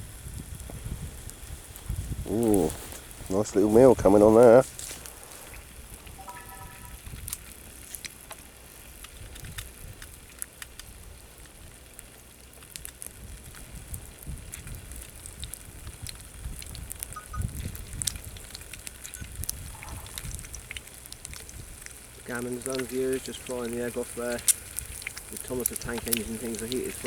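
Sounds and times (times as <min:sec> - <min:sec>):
fat spitting and crackling in pan: 0:00.1 - 0:27.0.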